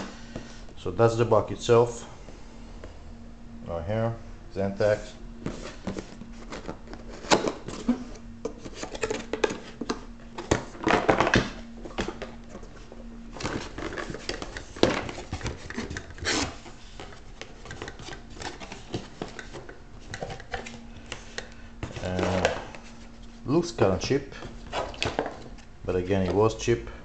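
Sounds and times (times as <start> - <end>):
cardboard box packaging rustling: 5.4 - 20.9.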